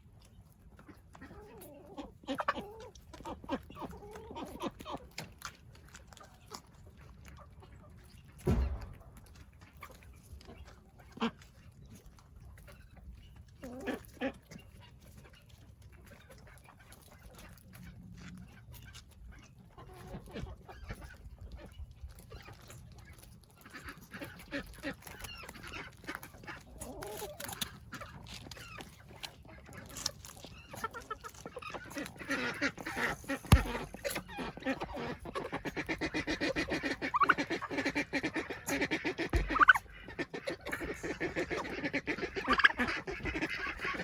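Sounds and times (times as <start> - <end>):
chickens and ducks calling: 0.0 - 44.0
low thump: 8.4 - 9.4.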